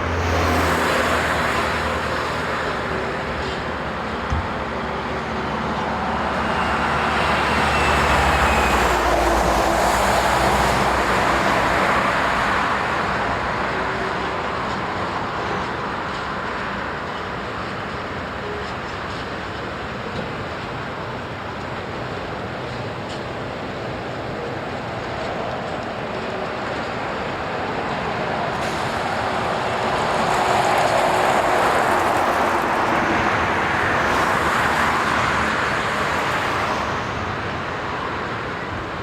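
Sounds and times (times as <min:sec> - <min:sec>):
heavy vehicle passing: 0:00.0 - 0:15.0, 0:26.6 - 0:39.0
traffic rumble: 0:00.0 - 0:39.0.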